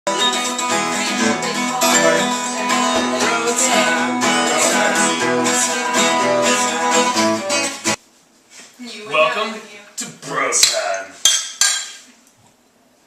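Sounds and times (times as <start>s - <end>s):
acoustic guitar music: 0.1s - 8.0s.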